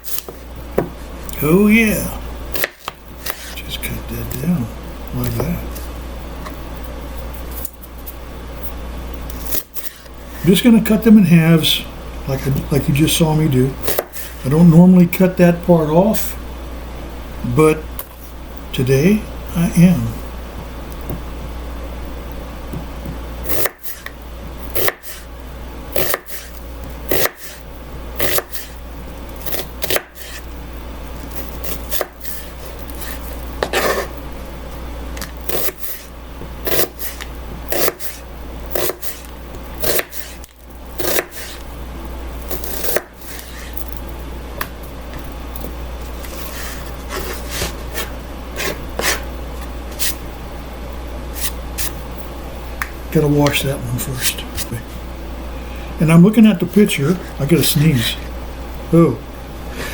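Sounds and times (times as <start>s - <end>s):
steady low hum: 0.0s - 59.9s
knife chopping on cutting board: 27.1s - 27.6s, 36.7s - 40.4s, 41.0s - 41.6s, 47.1s - 49.2s.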